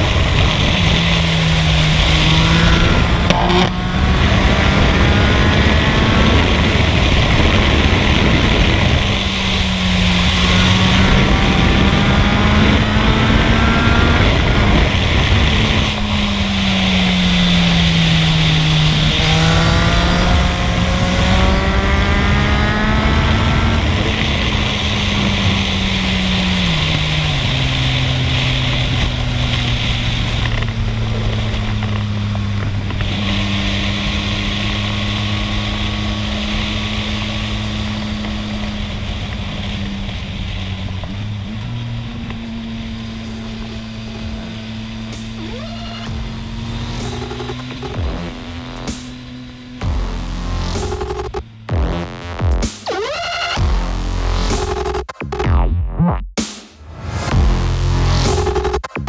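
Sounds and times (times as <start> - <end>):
steady rushing noise: 0.0 - 26.1, 42.7 - 55.6, 56.4 - 59.0
motorcycle engine accelerating: 0.0 - 59.0.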